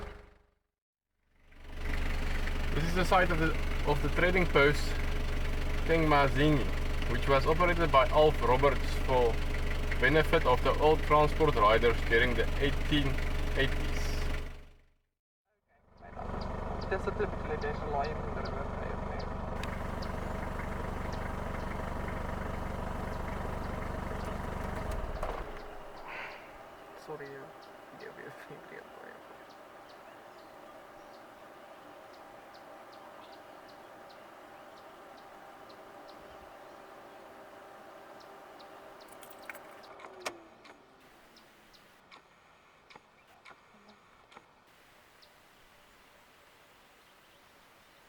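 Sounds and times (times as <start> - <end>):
car motor hum: 0.0 - 0.5, 1.4 - 14.9, 15.9 - 46.6
vehicle engine idling: 0.0 - 0.6, 1.3 - 14.9, 15.7 - 45.6
light clicks: 19.6 - 20.2.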